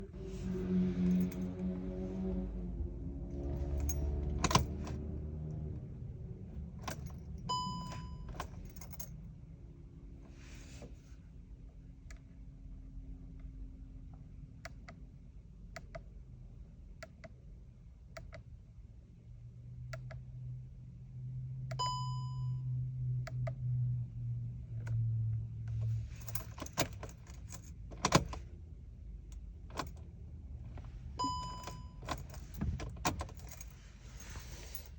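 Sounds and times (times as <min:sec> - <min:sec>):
low hum: 0:00.0 - 0:10.8, 0:19.3 - 0:28.0
keys rattling: 0:03.6 - 0:05.0, 0:06.8 - 0:09.1, 0:26.2 - 0:28.4, 0:31.6 - 0:34.9
dashboard warning chime: 0:07.5 - 0:08.5, 0:21.8 - 0:22.7, 0:31.2 - 0:32.4.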